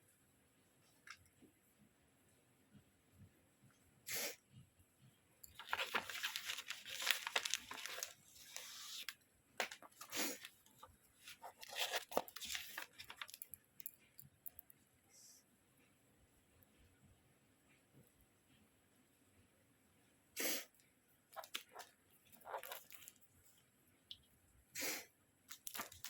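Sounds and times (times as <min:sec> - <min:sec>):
packaging tearing and crinkling: 0:05.6 - 0:10.5, 0:11.4 - 0:13.5, 0:25.5 - 0:26.0.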